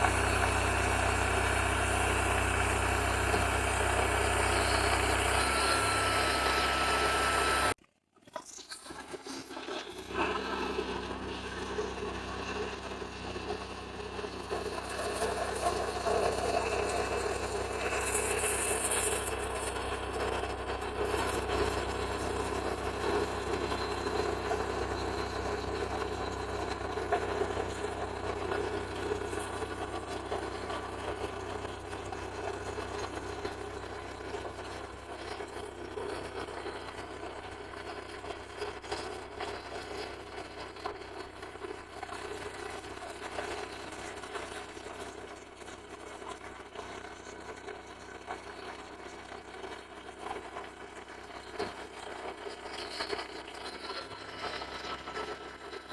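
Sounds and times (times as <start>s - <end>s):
sawmill engine running: 0.0s - 7.8s, 10.0s - 45.9s.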